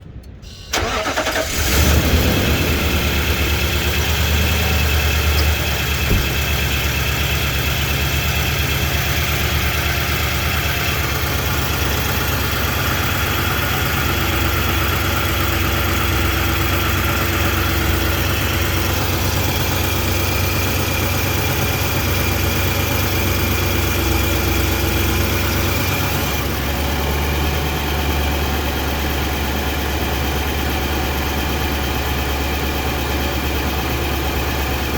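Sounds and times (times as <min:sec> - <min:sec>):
engine cranking and idling: 0:00.0 - 0:34.9.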